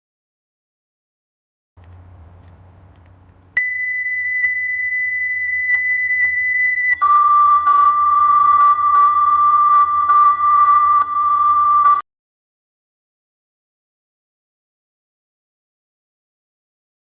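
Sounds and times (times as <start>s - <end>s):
test tone beep: 3.6s - 12.0s.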